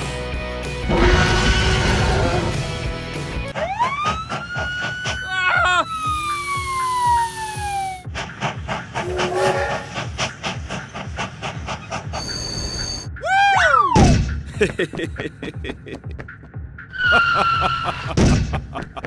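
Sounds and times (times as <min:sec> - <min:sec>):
cartoon whistle sliding in pitch: 0:05.8 - 0:08.1.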